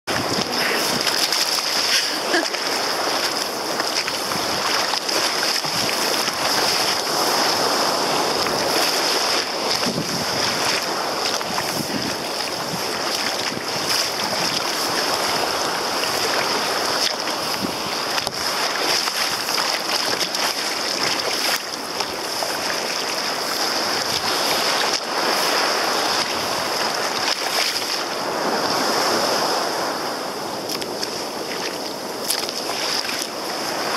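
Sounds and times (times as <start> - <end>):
wind buffeting microphone: 0.1 - 27.3
sea waves washing: 0.1 - 33.9.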